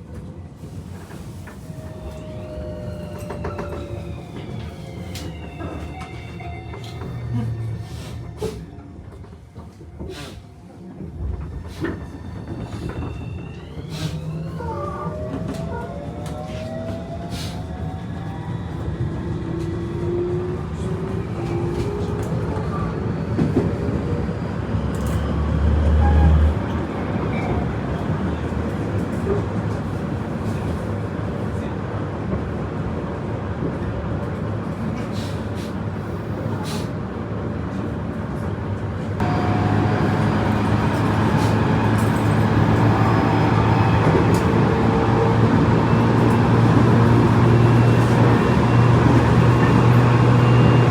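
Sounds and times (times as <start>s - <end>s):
train wheel and rail noise: 0.0s - 50.9s
inverter and traction motor whine: 39.2s - 50.9s.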